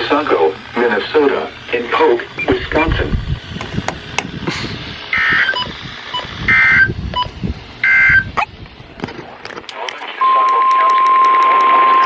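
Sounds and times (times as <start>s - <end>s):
buzzy digital data warble: 0.0s - 8.6s.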